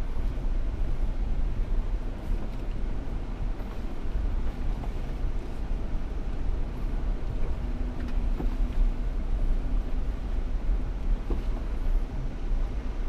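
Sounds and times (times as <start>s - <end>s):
vehicle engine rumbling: 0.0s - 13.0s.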